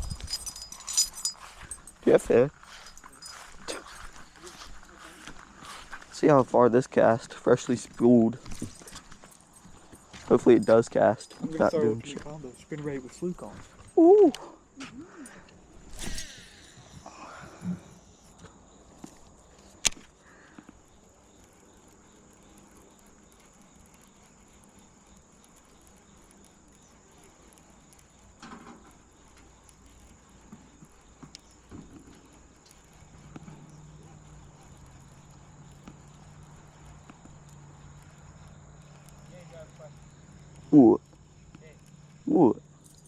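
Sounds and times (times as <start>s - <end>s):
crickets chirping: 0.0s - 43.0s
sharp clicks: 19.5s - 20.8s.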